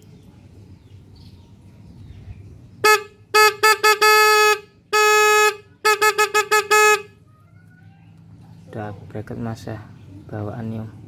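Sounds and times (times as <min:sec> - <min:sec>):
motorcycle horn honking: 0:02.8 - 0:07.2.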